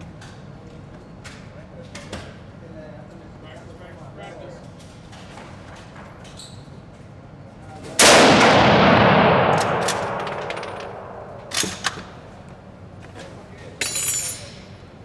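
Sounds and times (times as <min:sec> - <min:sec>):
rifle shot echoing: 0:08.0 - 0:12.6.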